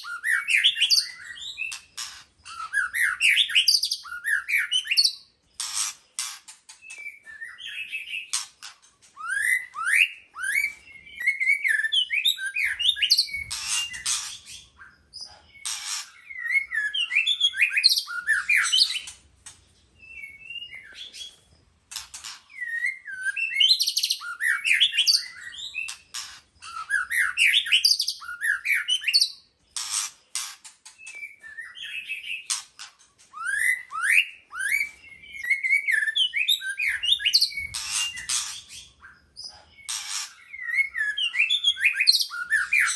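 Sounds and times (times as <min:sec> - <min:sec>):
bird singing whistled phrases: 0:00.0 - 0:01.8, 0:02.5 - 0:05.2, 0:06.9 - 0:08.4, 0:09.2 - 0:14.2, 0:16.2 - 0:19.1, 0:22.5 - 0:26.0, 0:26.6 - 0:29.5, 0:31.0 - 0:32.5, 0:33.4 - 0:39.2, 0:39.8 - 0:42.9.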